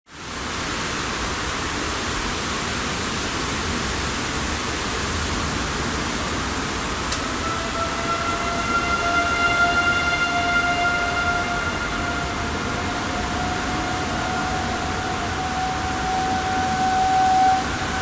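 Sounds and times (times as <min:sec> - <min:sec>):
steady rushing noise: 0:00.2 - 0:18.0
distant warning siren tone: 0:06.7 - 0:18.0.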